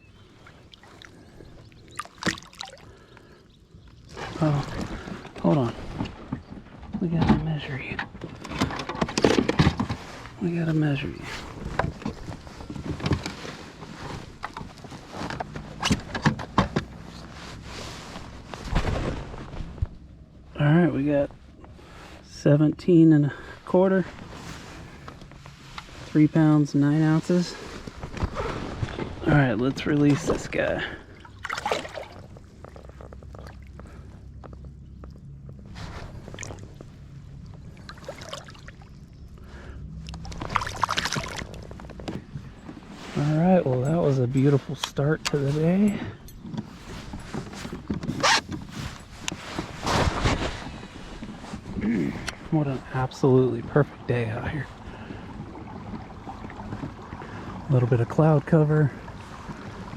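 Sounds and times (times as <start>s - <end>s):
water splashing and dripping: 0.4s - 5.4s, 31.1s - 32.4s, 37.5s - 39.1s, 40.0s - 41.8s.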